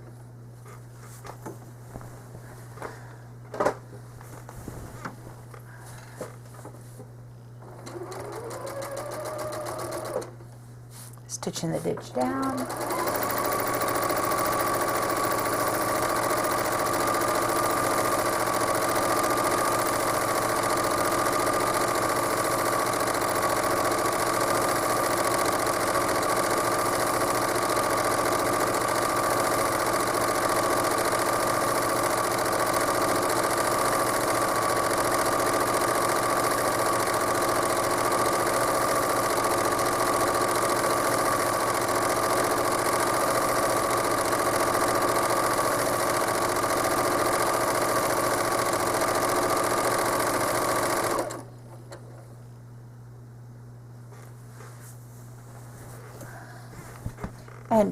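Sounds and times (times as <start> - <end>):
sewing machine motor whine: 7.6 - 10.4, 12.1 - 52.1.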